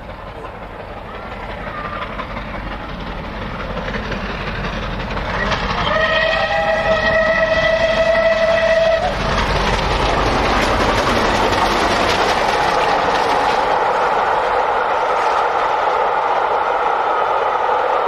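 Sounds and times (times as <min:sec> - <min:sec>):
train wheels rolling on rails: 0:00.0 - 0:18.0
train horn: 0:05.5 - 0:09.2.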